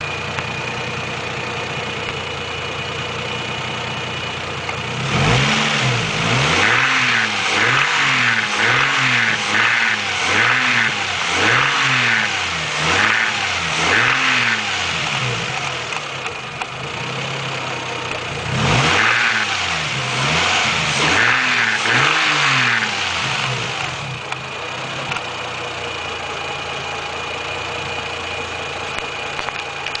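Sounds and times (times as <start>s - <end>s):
car engine idling and revving: 0.0s - 30.0s
hissing with each rev: 5.0s - 16.0s, 18.4s - 24.3s.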